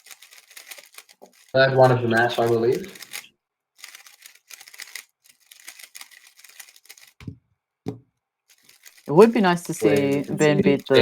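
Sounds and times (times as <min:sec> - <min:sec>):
plastic speed cube clicking: 0:00.0 - 0:01.5, 0:02.4 - 0:03.2, 0:03.8 - 0:07.2, 0:08.5 - 0:09.1.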